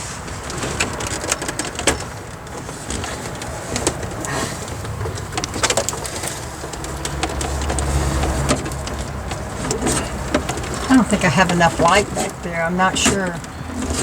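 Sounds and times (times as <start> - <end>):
electrical cords being handled: 0.0 - 14.0
small clicks and knocks: 0.5 - 10.9.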